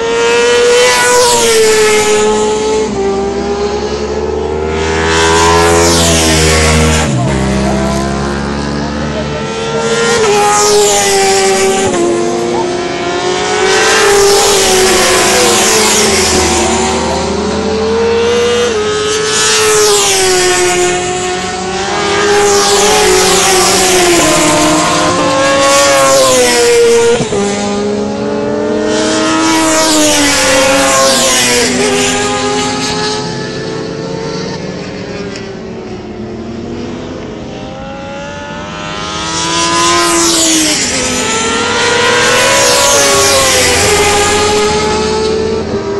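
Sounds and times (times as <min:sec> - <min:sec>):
racing motorcycles passing: 0:00.0 - 0:45.9.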